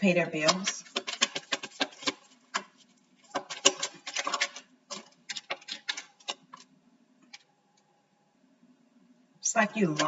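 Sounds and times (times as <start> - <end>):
rapid irregular clicking and tapping: 0.0 - 7.5.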